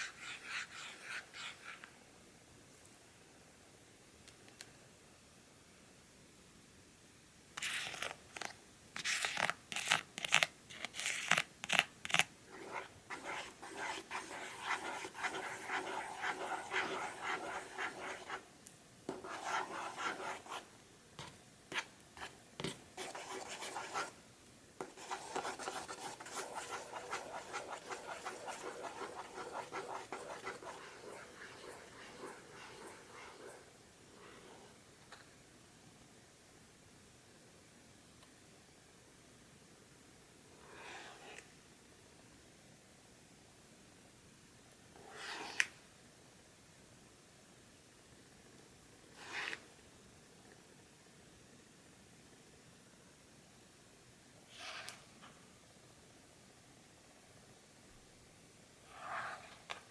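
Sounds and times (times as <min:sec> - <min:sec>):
plastic spoon stirring in tray: 0:07.6 - 0:18.4, 0:19.1 - 0:24.2, 0:24.8 - 0:33.7.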